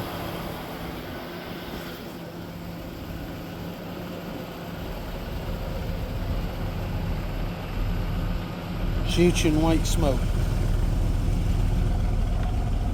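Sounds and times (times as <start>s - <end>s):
engine idling with a miss: 4.6s - 12.9s.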